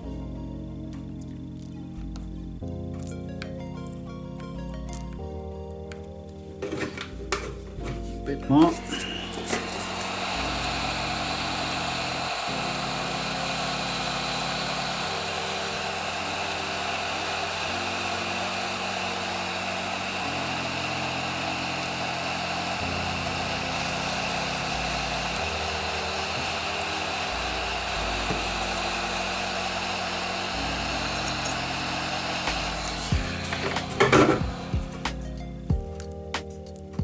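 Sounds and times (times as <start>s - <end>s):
hot-air tool blowing: 7.8s - 36.1s.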